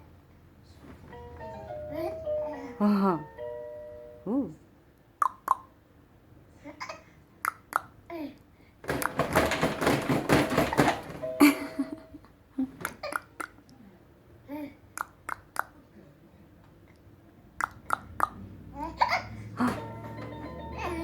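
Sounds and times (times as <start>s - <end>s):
background music: 1.1s - 4.4s, 19.6s - 21.0s
baby laughing and babbling: 1.9s - 3.0s, 12.7s - 13.6s, 18.7s - 19.8s, 20.7s - 21.0s
baby hiccuping: 5.2s - 5.7s, 12.8s - 13.6s, 17.6s - 19.4s.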